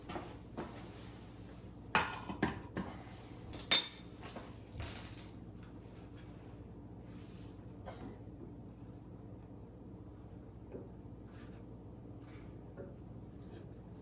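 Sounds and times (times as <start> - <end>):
metallic clinks and knocks: 3.7 - 5.5.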